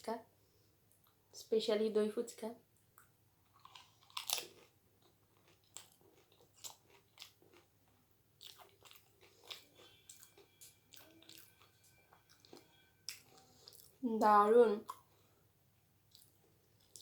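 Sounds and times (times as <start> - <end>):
person chewing crunchy food: 3.0 - 14.0, 16.0 - 17.0.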